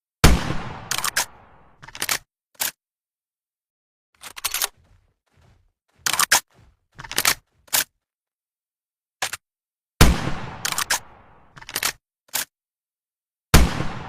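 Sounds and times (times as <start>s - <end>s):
sharp mechanical clicks and clacks: 4.2s - 7.9s.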